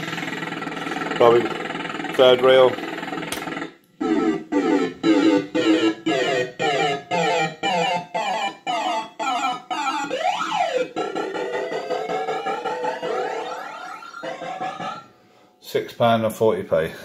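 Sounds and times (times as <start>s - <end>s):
fruit machine electronic jingle: 4.0s - 15.1s.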